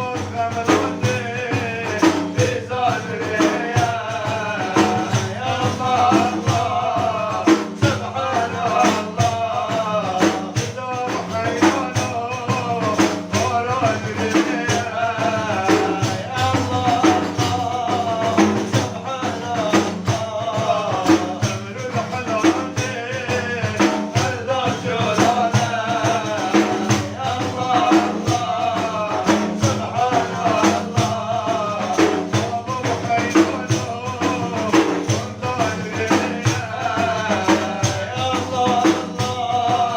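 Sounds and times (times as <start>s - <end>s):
frame drums with jingles: 0.0s - 39.9s
man singing: 0.0s - 39.9s.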